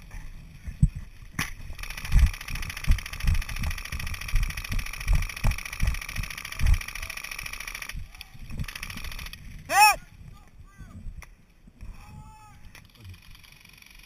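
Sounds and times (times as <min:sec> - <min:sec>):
dull thumps: 0:00.7 - 0:06.8
fast fine rattle: 0:00.7 - 0:09.6, 0:12.8 - 0:14.0.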